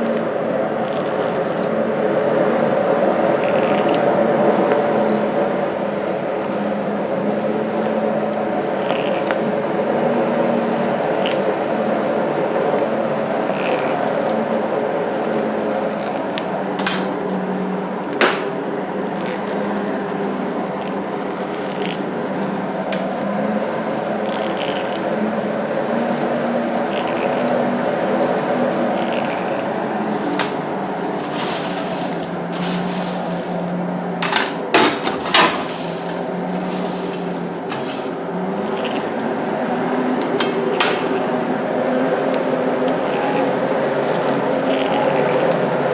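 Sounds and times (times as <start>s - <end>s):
hand-cranked blower whirring: 28.9s - 39.3s.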